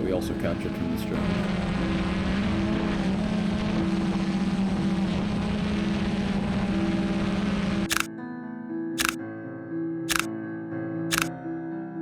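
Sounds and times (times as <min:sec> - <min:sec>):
quadcopter drone buzzing: 0:00.4 - 0:08.1.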